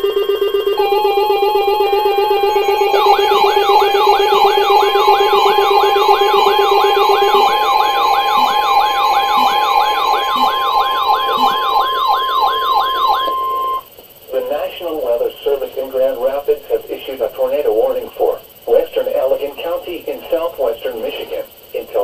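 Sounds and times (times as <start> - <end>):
lower pulsing tone: 0.0 - 13.8
rising siren-like sweep: 0.0 - 13.8
steady alarm tone: 0.0 - 22.0.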